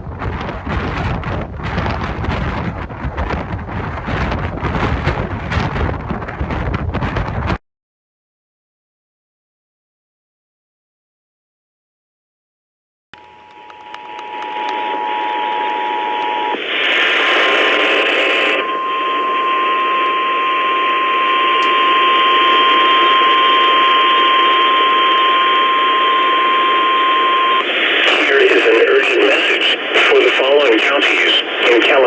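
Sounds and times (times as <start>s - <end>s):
radio hiss: 13.2s - 32.0s
steady warning tone: 13.2s - 32.0s
loud static burst: 14.1s - 20.2s, 21.6s - 32.0s.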